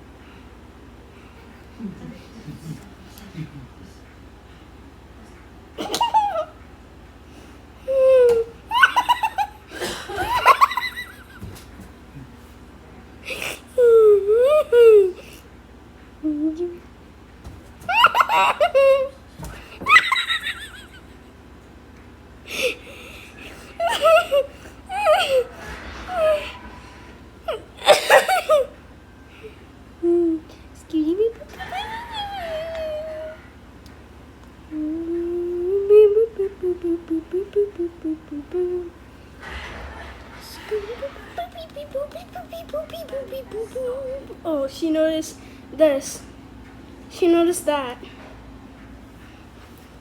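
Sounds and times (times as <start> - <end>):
woman laughing and wheezing: 7.9 - 11.7, 17.9 - 21.3, 22.5 - 28.8, 31.5 - 33.5
person's wheezing laughter: 22.5 - 28.8.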